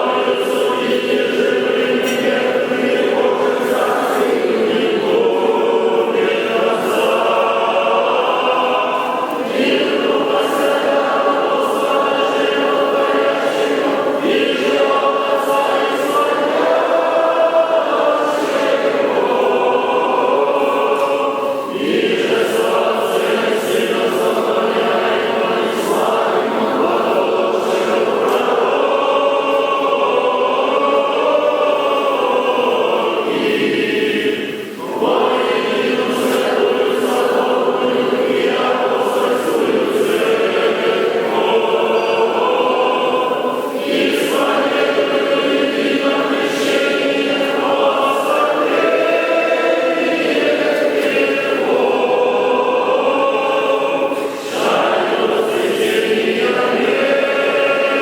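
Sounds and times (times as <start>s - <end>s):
choir chanting unaccompanied: 0.0s - 58.0s.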